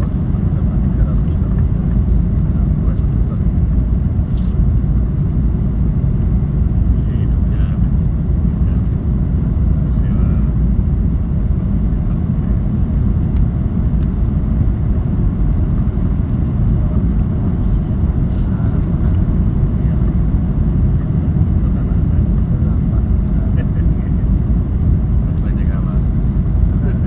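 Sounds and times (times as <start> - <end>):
airliner engines rumbling: 0.0 - 27.0.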